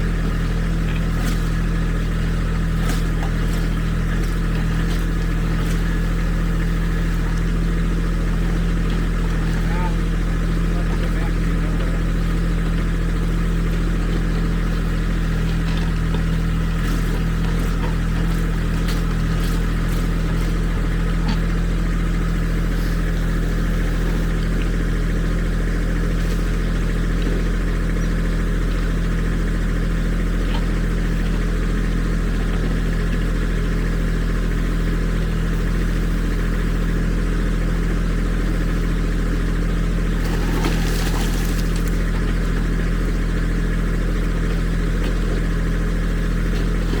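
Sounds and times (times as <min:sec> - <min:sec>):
diesel engine running: 0:00.0 - 0:47.0.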